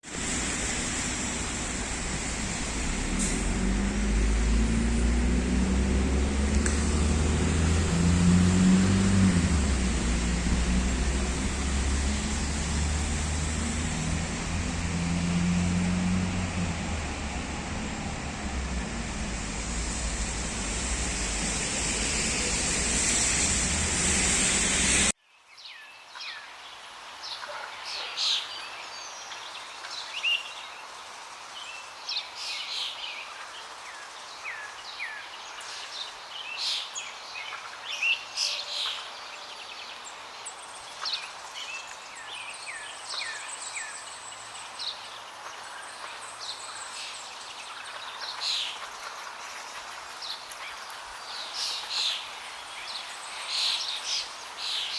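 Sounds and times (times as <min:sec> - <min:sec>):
waterfall rushing: 0:00.1 - 0:25.1.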